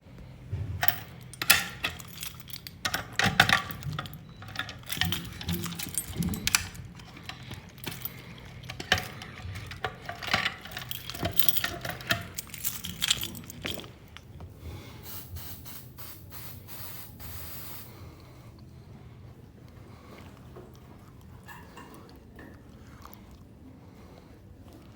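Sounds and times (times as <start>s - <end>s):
faint hiss: 15.0s - 17.9s.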